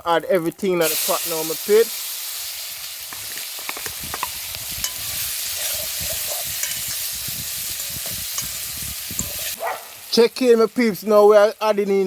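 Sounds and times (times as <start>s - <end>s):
vegetables sizzling in oil: 0.2s - 12.0s.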